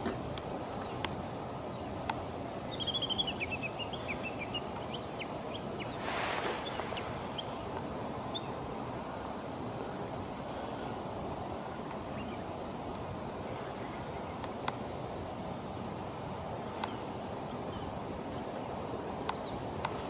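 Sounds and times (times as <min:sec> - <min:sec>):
outdoor background noise: 0:00.0 - 0:20.0
gust of wind: 0:05.7 - 0:08.2.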